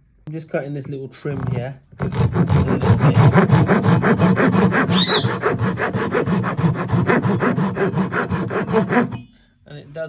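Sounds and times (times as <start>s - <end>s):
handsaw cutting wood: 1.3s - 9.2s.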